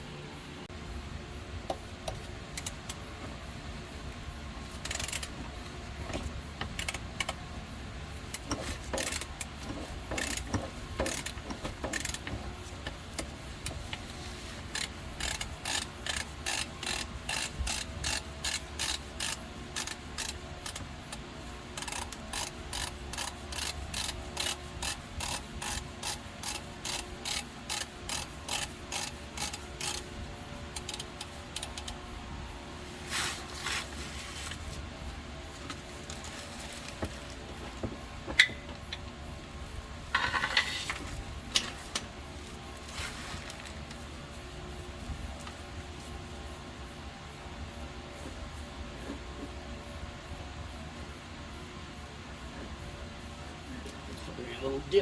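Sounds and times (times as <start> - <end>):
ratchet wrench clicking: 1.7 - 3.1, 4.7 - 7.6, 8.2 - 32.0.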